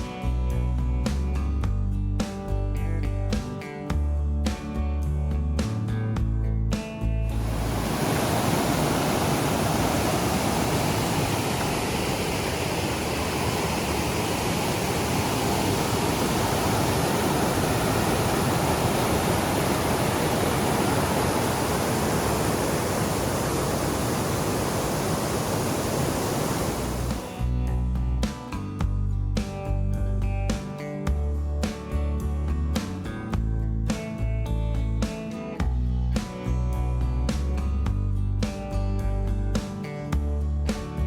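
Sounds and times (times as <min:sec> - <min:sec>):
river rushing: 0:07.4 - 0:27.4.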